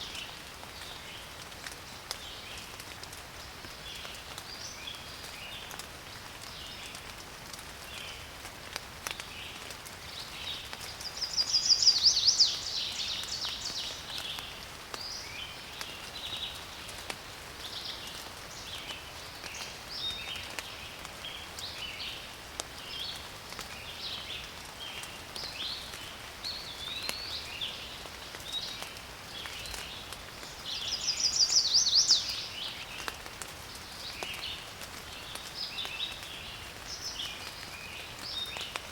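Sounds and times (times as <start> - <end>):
light rain falling: 0.0 - 38.9
birds chirping: 10.2 - 16.6, 25.5 - 34.6.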